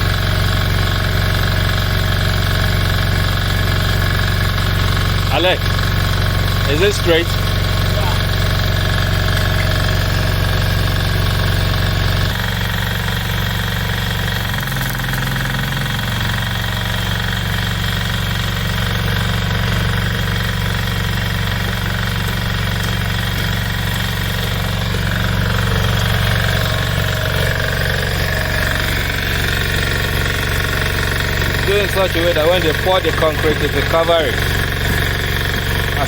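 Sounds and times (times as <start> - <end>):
engine running: 0.0 - 36.0.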